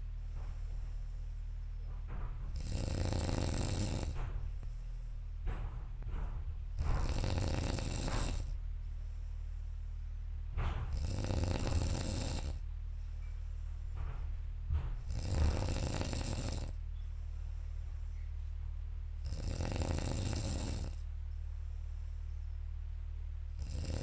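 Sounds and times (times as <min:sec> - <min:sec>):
person snoring loudly: 0:02.6 - 0:04.2, 0:07.0 - 0:08.5, 0:10.9 - 0:12.6, 0:15.1 - 0:16.8, 0:19.2 - 0:21.0, 0:23.6 - 0:24.0.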